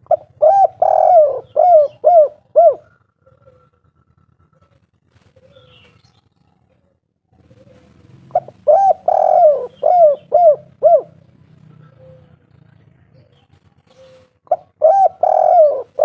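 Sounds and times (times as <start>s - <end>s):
dove cooing: 0.0s - 6.0s, 6.6s - 12.5s, 13.2s - 16.0s.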